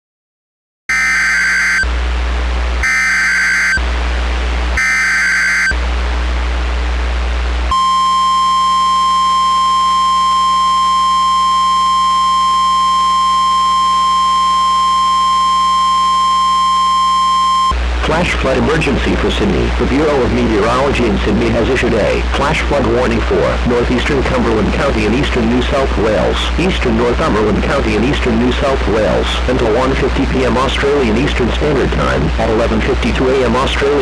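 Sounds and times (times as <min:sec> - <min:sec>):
piercing warning alarm tone: 0:00.9 - 0:01.9, 0:02.8 - 0:03.8, 0:04.8 - 0:05.8, 0:07.7 - 0:17.8
screechy data bursts: 0:00.9 - 0:01.9, 0:02.8 - 0:03.8, 0:04.8 - 0:05.8.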